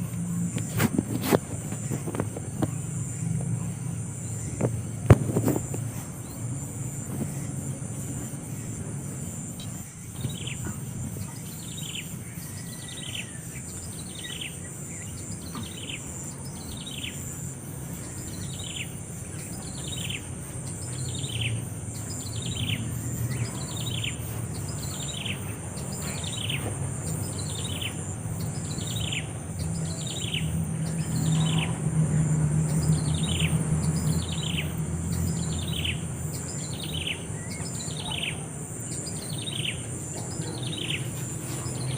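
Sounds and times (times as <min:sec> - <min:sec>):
high insect drone: 0:00.0 - 0:41.9
bird calling: 0:09.6 - 0:41.9.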